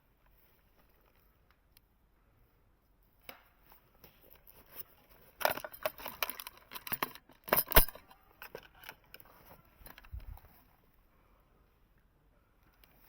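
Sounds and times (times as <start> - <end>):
equipment clicks and rattles: 5.2 - 10.6.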